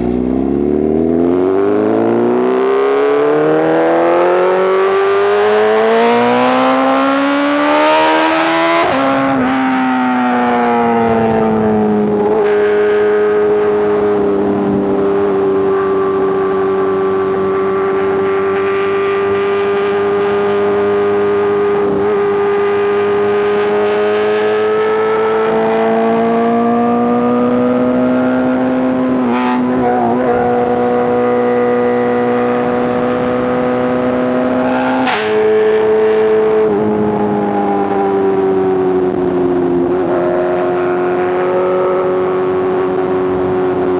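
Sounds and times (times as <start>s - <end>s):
motorcycle engine revving: 0.0s - 43.9s
gear change: 10.4s - 43.9s.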